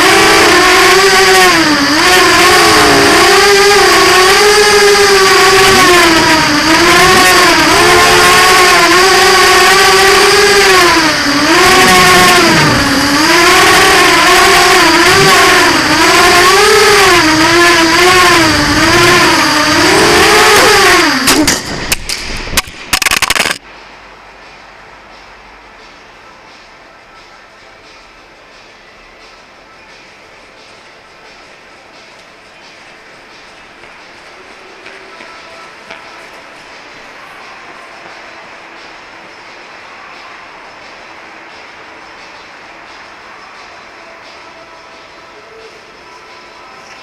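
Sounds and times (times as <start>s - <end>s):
drone motors buzzing whine: 0.0s - 23.6s.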